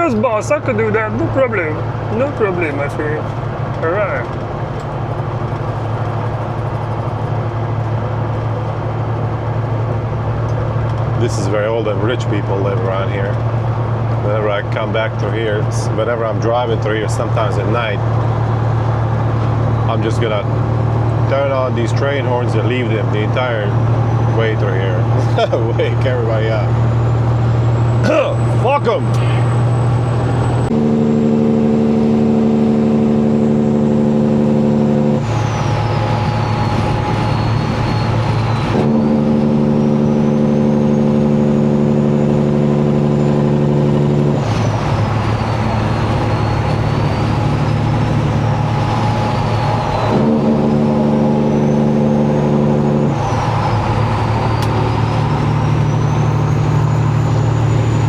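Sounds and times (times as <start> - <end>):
diesel engine running: 0.0 - 58.0
truck air horn blasts: 30.7 - 32.5, 45.5 - 52.5.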